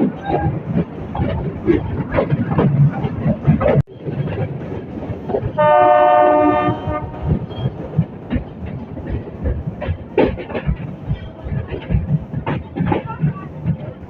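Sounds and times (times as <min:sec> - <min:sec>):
train carriages clattering on track: 0:00.0 - 0:14.0
locomotive horn blast: 0:05.6 - 0:07.4.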